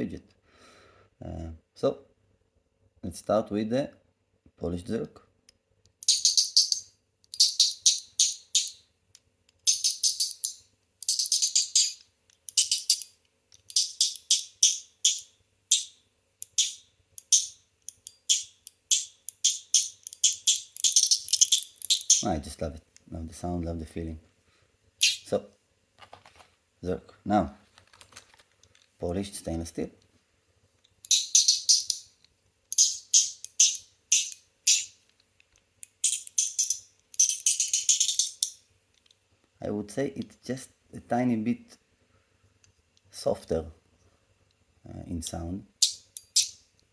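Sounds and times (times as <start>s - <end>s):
metal fidget toy clicking: 6.0s - 8.8s, 9.6s - 22.3s, 31.0s - 32.0s, 32.7s - 34.9s, 35.8s - 38.6s, 45.8s - 46.5s.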